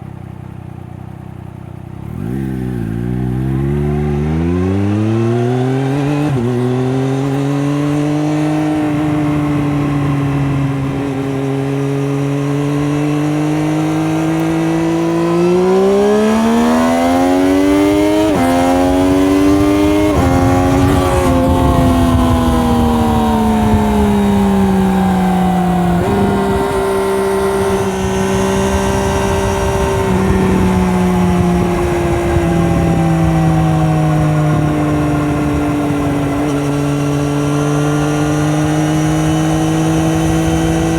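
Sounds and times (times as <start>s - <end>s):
motorcycle engine revving: 0.0s - 40.9s
gear upshifts: 2.0s - 40.9s.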